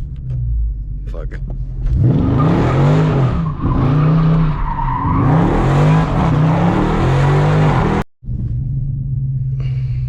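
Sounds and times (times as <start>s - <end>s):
car engine revving: 1.5s - 8.1s.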